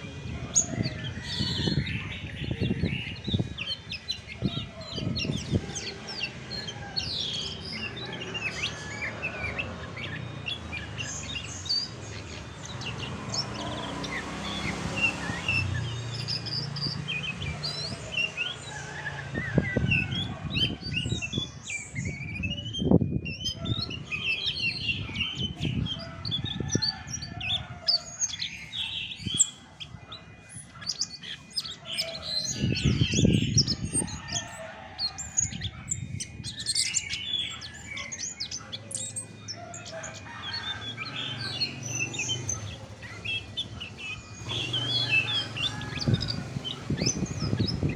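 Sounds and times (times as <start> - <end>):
bird singing chirps and whistles: 0.0 - 27.4, 28.0 - 34.5.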